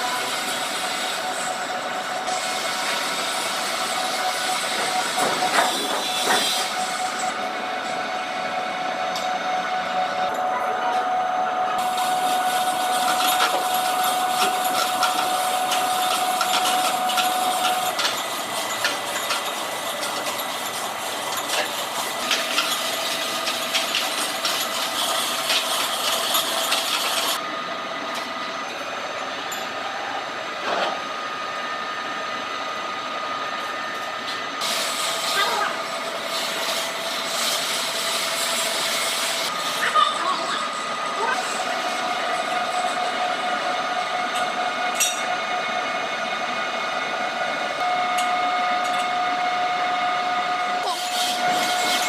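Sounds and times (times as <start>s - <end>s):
machine tool whine: 0.0s - 52.0s.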